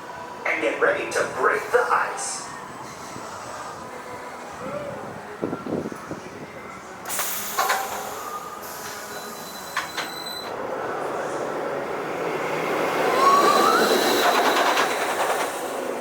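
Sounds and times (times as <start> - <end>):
roller coaster rumble on track: 0.0 - 16.0
roller coaster clanks: 13.3 - 16.0.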